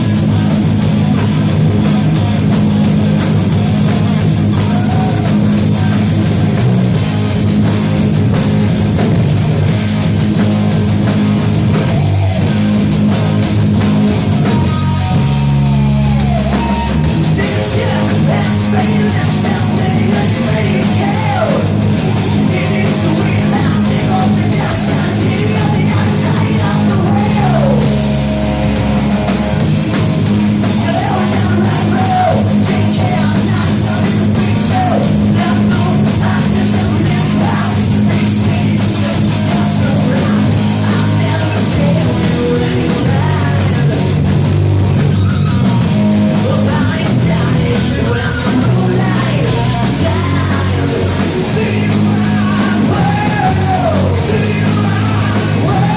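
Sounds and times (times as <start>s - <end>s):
distorted rock band playing: 0.0s - 55.9s
person shouting singing: 4.4s - 6.2s, 17.3s - 28.0s, 30.8s - 44.2s, 46.4s - 55.9s.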